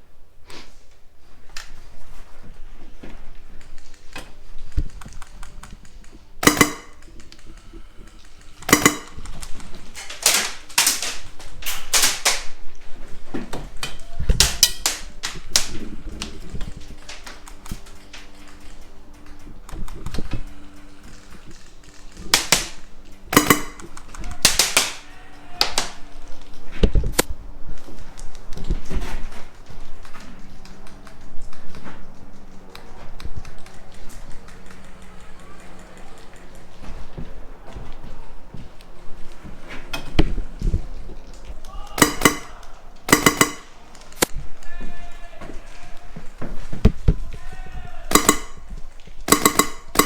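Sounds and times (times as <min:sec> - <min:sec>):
airsoft guns firing: 0:06.4 - 0:12.6, 0:21.1 - 0:25.9, 0:41.8 - 0:44.3, 0:48.1 - 0:50.0.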